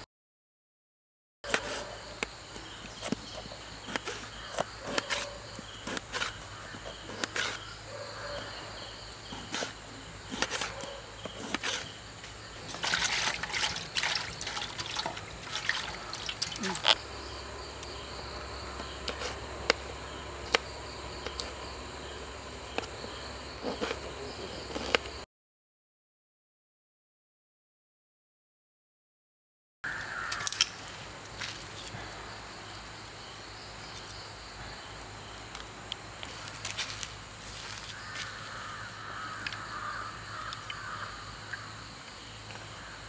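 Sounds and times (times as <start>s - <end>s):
insect chirring: 1.5s - 25.2s, 29.8s - 43.0s
trickling water: 12.6s - 17.0s.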